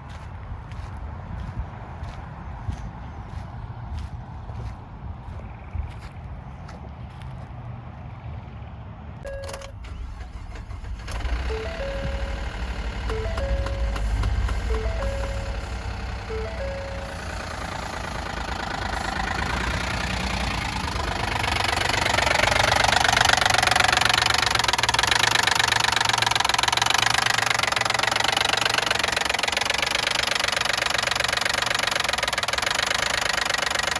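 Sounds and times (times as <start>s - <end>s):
truck engine knocking: 9.3s - 33.9s.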